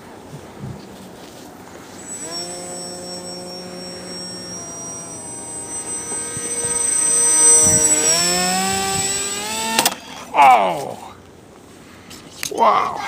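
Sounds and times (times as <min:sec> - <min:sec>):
model plane propeller whining: 0:01.7 - 0:10.2.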